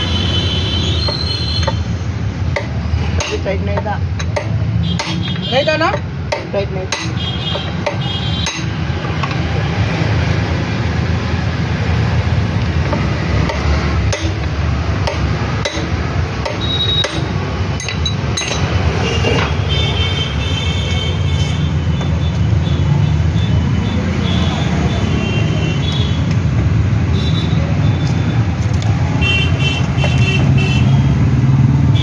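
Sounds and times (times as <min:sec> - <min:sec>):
street traffic rumble: 0:00.0 - 0:32.0
metallic clinks of tools: 0:17.8 - 0:18.8.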